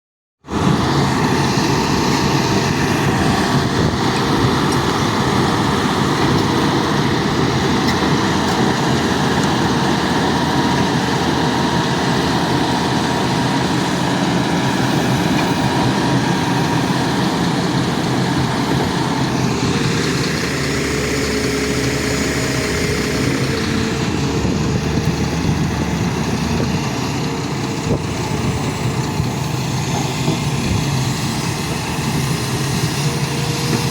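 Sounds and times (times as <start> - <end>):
excavator diesel engine running: 0.4 - 33.9.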